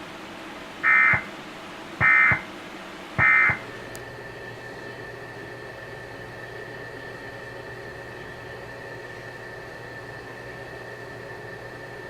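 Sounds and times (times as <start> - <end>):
warbling digital data tones: 0.8 - 1.3, 2.0 - 2.4, 3.2 - 3.6.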